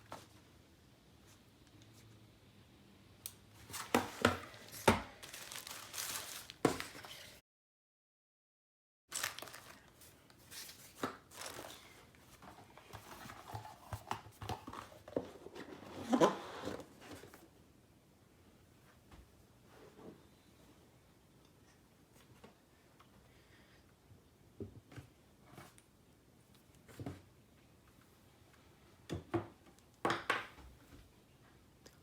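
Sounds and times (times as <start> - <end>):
packaging crinkling and rustling: 3.7 - 7.4, 9.1 - 15.0.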